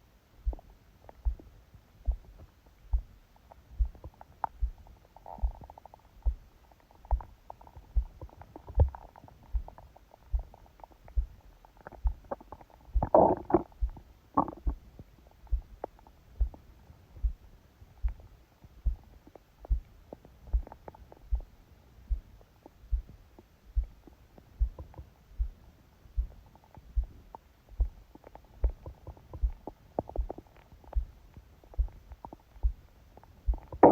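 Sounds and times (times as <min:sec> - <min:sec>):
heartbeat thumping: 0:00.4 - 0:06.5, 0:07.1 - 0:11.4, 0:12.0 - 0:15.8, 0:16.4 - 0:16.6, 0:17.2 - 0:19.9, 0:20.5 - 0:21.5, 0:22.1 - 0:25.6, 0:26.2 - 0:27.2, 0:27.8 - 0:28.0, 0:28.6 - 0:32.0, 0:32.6 - 0:33.9
stomach gurgling: 0:03.5 - 0:16.6, 0:18.0 - 0:21.5, 0:26.2 - 0:33.9.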